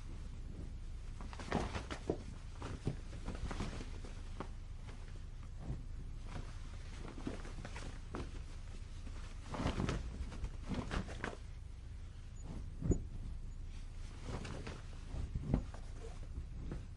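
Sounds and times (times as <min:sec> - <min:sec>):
cloth flapping on a clothesline: 0:00.0 - 0:16.9
low steady rumble: 0:00.0 - 0:16.9.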